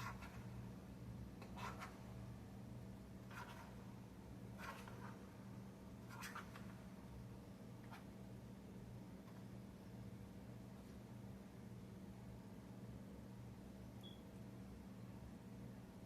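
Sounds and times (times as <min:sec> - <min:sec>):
low steady hum: 0:00.0 - 0:16.0
scratchy rustles of flour coating: 0:03.2 - 0:03.9.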